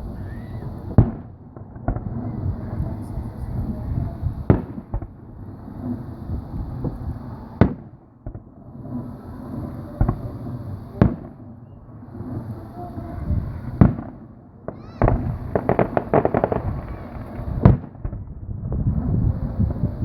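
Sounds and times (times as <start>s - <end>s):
rising firework whistle: 0.0s - 1.3s, 8.6s - 20.0s
fireworks booming bursts: 0.0s - 20.0s
rapid crackling pops: 13.8s - 20.0s.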